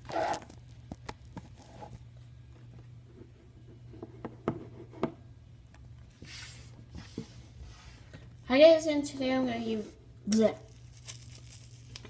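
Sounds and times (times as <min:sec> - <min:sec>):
handling noises rubbing and scraping: 0:00.0 - 0:04.8
low steady hum: 0:00.0 - 0:12.0.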